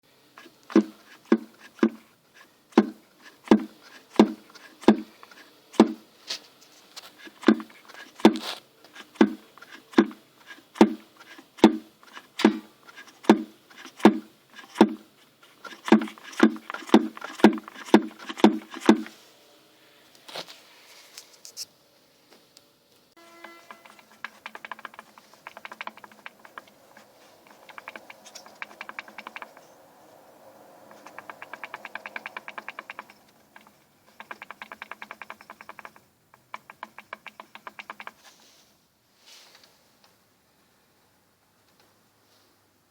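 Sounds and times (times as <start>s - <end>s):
dull knocking from car suspension: 0.7s - 2.0s, 2.7s - 5.2s, 5.8s - 6.0s, 10.8s - 15.0s.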